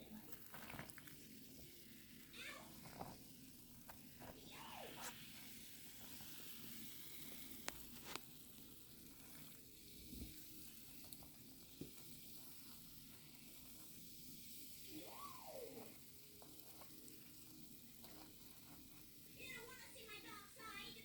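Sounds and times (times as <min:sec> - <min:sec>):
fermenting wine fizzing: 0:00.0 - 0:19.7.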